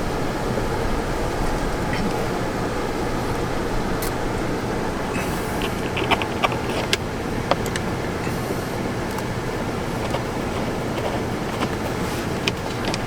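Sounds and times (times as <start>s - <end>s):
steady low rumble: 0.0s - 11.6s
clicks of plastic parts handled: 5.5s - 7.9s, 10.0s - 13.0s.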